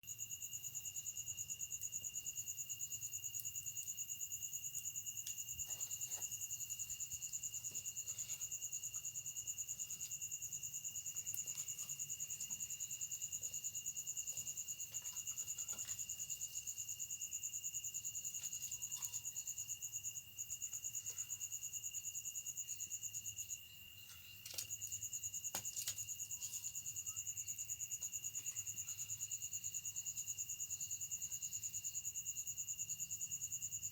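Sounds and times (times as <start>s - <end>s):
crickets trilling: 0.0s - 33.9s.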